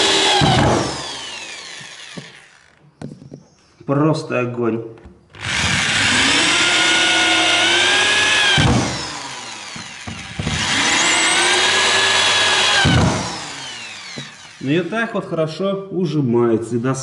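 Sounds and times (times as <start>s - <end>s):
drill driving screws into wood: 0.0s - 2.8s, 5.3s - 15.0s.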